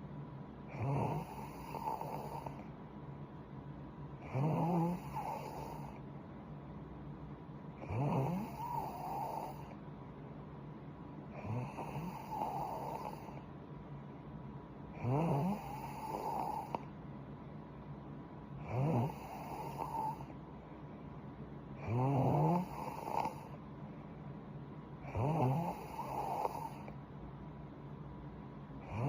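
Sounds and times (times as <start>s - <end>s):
woman snoring: 0.7s - 2.6s, 4.2s - 6.0s, 7.8s - 9.8s, 11.3s - 13.4s, 15.0s - 16.9s, 18.6s - 20.3s, 21.8s - 23.6s, 25.0s - 26.9s.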